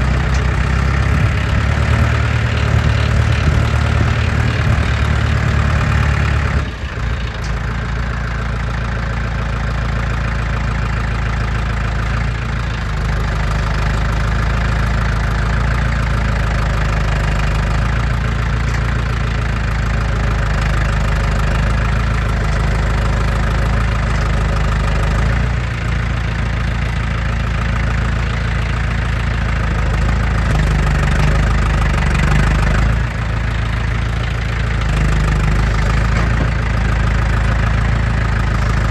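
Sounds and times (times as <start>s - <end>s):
tractor engine running: 0.0s - 38.9s.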